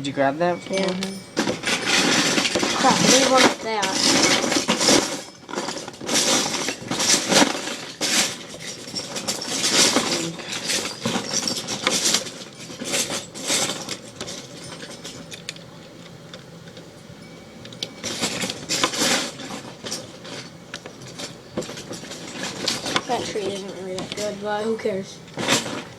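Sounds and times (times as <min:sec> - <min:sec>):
plastic bricks clattering: 0:00.7 - 0:15.7.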